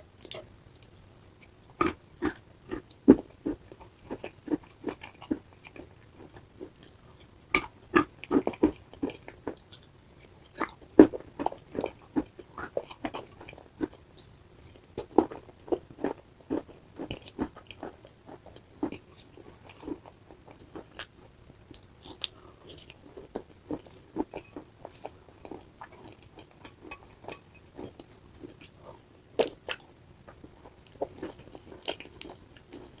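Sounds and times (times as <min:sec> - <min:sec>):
chewing wet clay crunches: 0:00.2 - 0:09.8.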